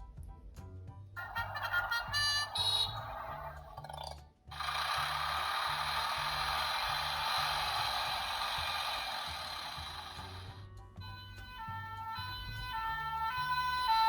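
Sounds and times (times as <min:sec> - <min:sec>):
background music: 0:00.0 - 0:14.0
toy vehicle whirring and rattling: 0:04.5 - 0:10.6.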